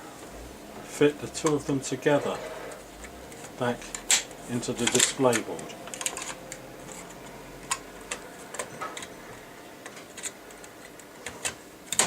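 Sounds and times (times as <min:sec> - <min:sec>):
circuit boards clicking: 0:02.7 - 0:12.0.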